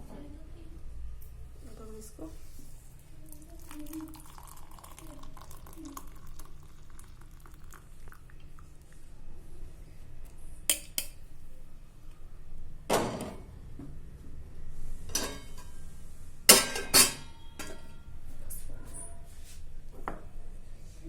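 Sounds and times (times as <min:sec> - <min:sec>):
utensils and dishes clinking: 0:15.1 - 0:15.8, 0:16.5 - 0:18.1.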